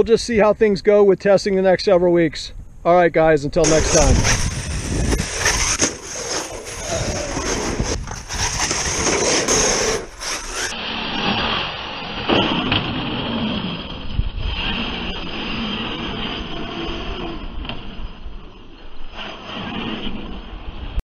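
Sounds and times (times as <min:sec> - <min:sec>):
toy truck rattling: 0:03.6 - 0:10.7
electric motor whining: 0:03.6 - 0:18.3.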